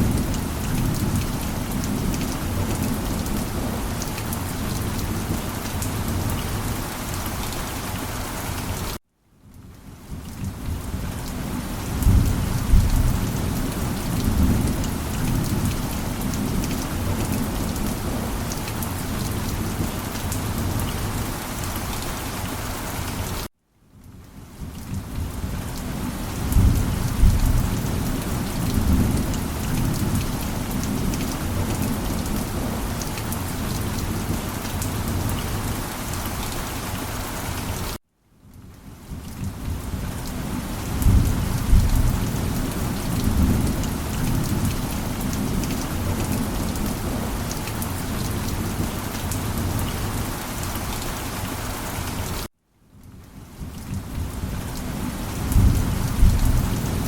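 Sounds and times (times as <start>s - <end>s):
heavy rain: 0.0s - 57.0s
low rolling thunder: 10.4s - 18.4s, 26.3s - 33.0s, 40.9s - 47.4s, 55.4s - 57.0s.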